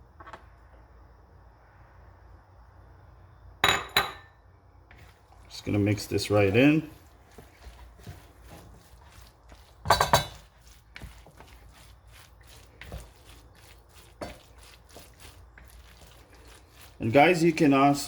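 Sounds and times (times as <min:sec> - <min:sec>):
utensil stirring batter in bowl: 0:04.9 - 0:18.0
utensil clattering against bowl: 0:07.6 - 0:17.0.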